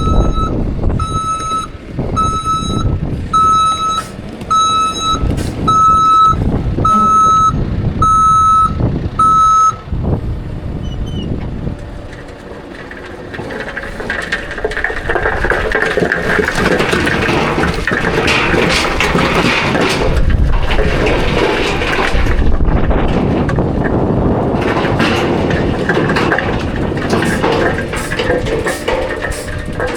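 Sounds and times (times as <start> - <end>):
reversing alarm beeping: 0.0 - 9.9
heavy diesel engine running: 0.0 - 29.9.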